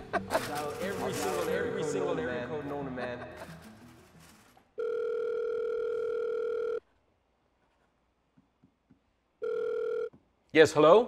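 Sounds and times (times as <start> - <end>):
telephone ringback tone: 4.8 - 6.8, 9.4 - 10.1.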